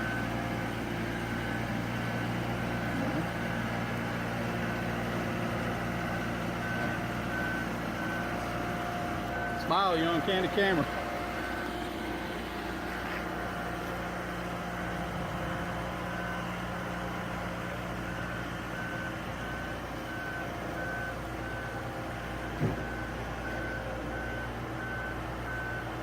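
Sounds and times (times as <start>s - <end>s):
travel lift engine running: 0.0s - 26.0s
warning alarm beeps: 9.2s - 11.7s
short thump: 22.5s - 23.0s.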